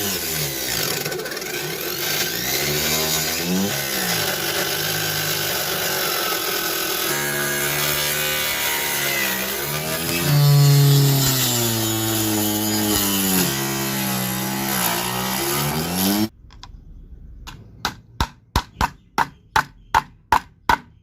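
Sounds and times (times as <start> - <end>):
power tool cutting wood: 0.0 - 16.3.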